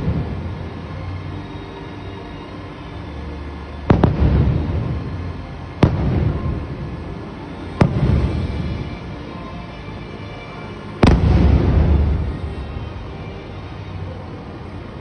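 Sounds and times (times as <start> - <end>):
fireworks bangs: 0.0 - 1.0, 3.9 - 9.3, 11.0 - 13.9
rolling rumble: 0.0 - 1.0.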